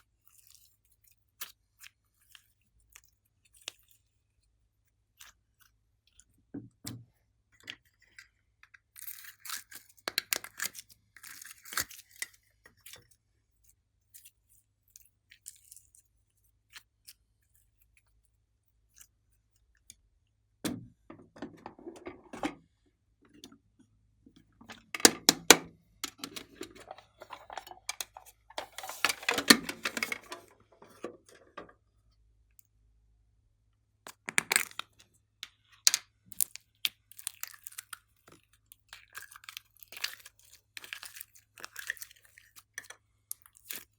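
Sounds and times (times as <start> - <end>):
slime crackling and squelching: 36.4 - 43.9.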